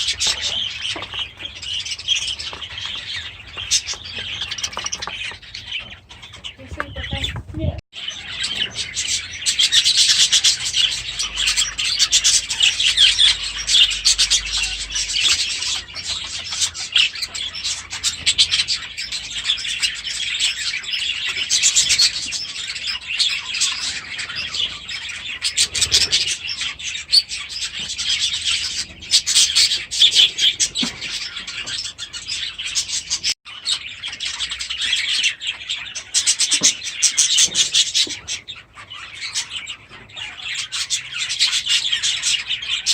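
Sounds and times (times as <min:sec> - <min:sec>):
budgerigars chattering and chirping: 0:00.0 - 0:42.9.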